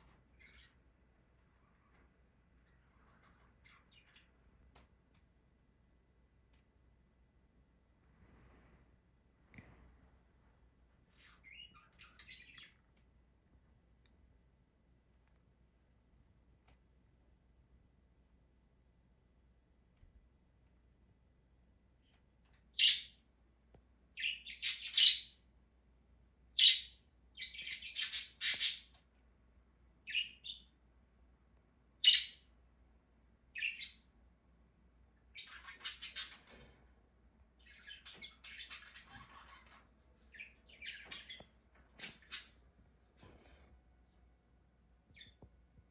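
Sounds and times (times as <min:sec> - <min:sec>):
bird chirping and squawking: 0:00.4 - 0:00.8, 0:11.1 - 0:12.8, 0:22.8 - 0:23.2, 0:24.2 - 0:25.4, 0:26.6 - 0:29.0, 0:32.0 - 0:32.4, 0:35.3 - 0:36.5, 0:37.6 - 0:42.6.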